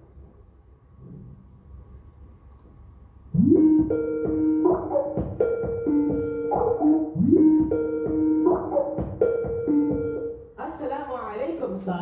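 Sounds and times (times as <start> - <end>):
phone ringtone melody: 3.6 - 10.5.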